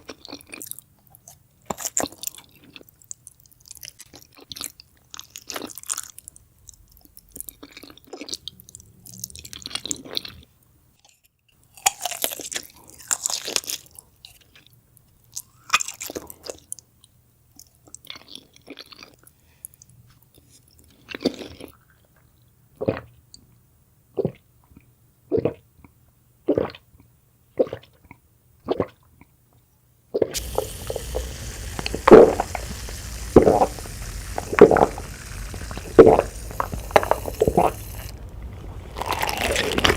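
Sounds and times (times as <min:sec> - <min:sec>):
crunchy bites and chewing: 0:11.7 - 0:14.0, 0:30.4 - 0:39.9
background hiss: 0:30.4 - 0:39.9
wet chewing: 0:30.4 - 0:39.9.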